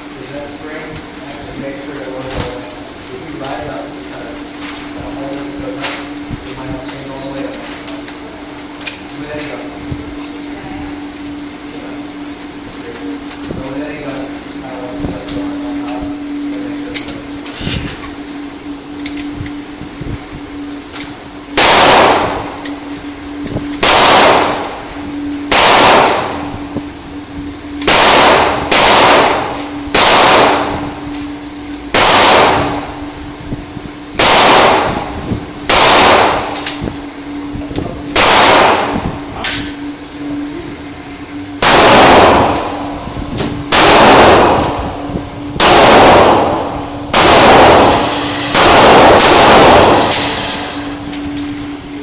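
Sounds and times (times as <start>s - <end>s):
steady low hum: 0.0s - 52.0s
pistol shots with echo: 21.6s - 22.5s, 23.8s - 24.8s, 25.5s - 26.5s, 27.8s - 30.9s, 31.9s - 32.9s, 34.2s - 35.1s, 35.7s - 36.8s, 38.1s - 39.0s, 41.6s - 42.9s, 43.7s - 44.9s, 45.6s - 50.8s.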